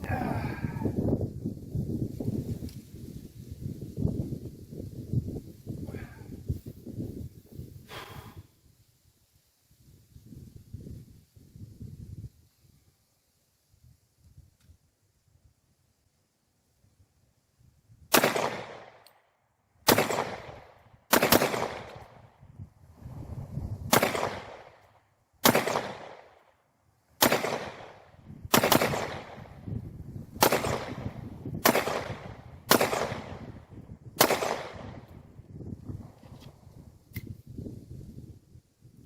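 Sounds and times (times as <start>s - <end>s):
pistol shots with echo: 18.1s - 19.0s, 19.9s - 22.0s, 23.9s - 24.8s, 25.4s - 26.3s, 27.2s - 29.5s, 30.4s - 33.5s, 34.2s - 35.0s.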